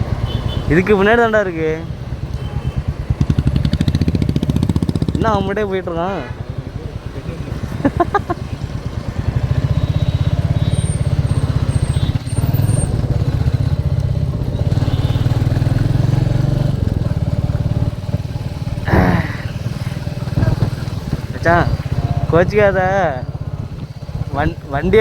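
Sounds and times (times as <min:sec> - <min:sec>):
motorcycle engine running: 0:00.0 - 0:25.0.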